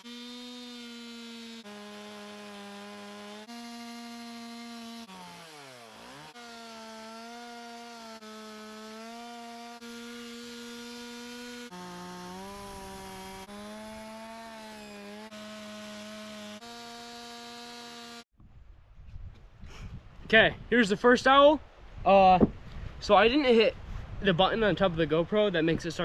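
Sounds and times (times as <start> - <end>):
chainsaw carving wood: 0.0 - 18.3.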